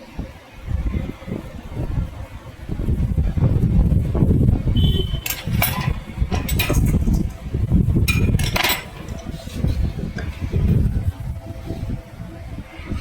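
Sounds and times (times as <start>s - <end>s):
steady low rumble: 0.0s - 13.0s
metal hand tools clinking: 5.2s - 7.4s, 8.1s - 9.4s.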